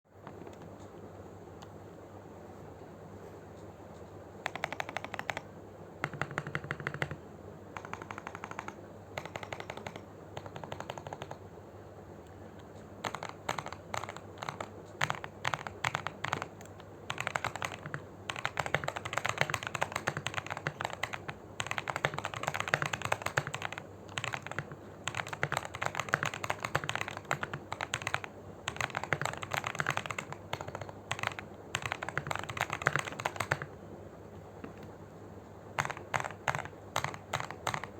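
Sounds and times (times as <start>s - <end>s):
mechanical keyboard typing: 4.4s - 11.4s, 12.7s - 33.8s, 35.8s - 37.9s.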